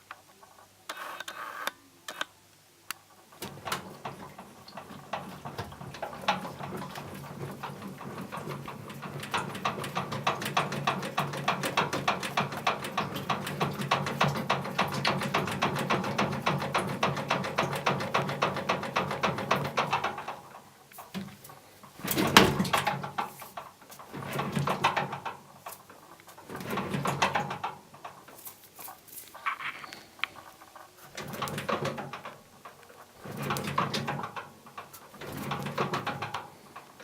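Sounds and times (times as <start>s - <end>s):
washing machine knocking: 3.4s - 28.5s, 31.0s - 37.0s.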